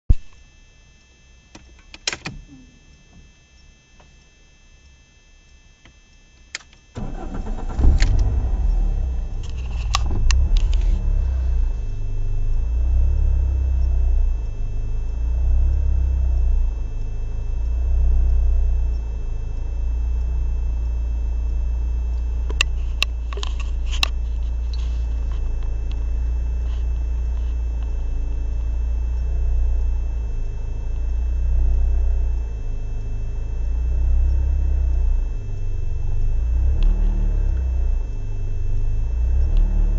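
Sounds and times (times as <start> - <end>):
engine starting: 7.0 - 11.7
engine idling roughly: 7.0 - 17.3.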